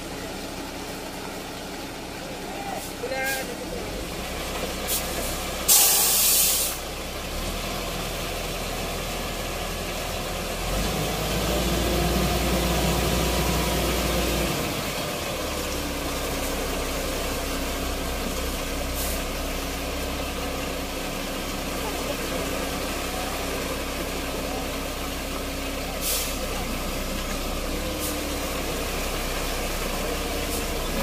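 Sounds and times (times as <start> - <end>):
low engine-like hum: 0.0 - 31.0
loud burst of hiss: 5.7 - 6.8.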